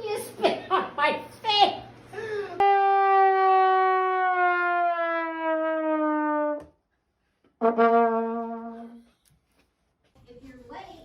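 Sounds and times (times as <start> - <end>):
falling horn-like tone: 2.6 - 6.7.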